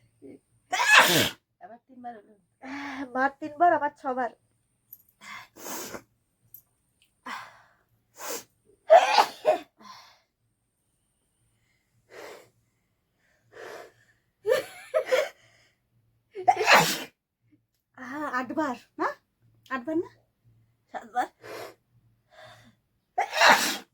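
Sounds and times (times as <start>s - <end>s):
people sneezing: 0.8s - 1.4s, 8.9s - 9.6s, 16.5s - 17.1s, 23.2s - 23.9s.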